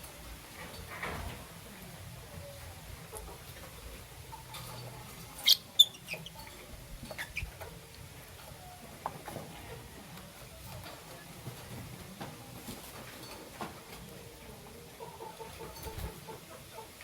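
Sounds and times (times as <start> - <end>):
lovebird chirping: 5.4 - 7.6.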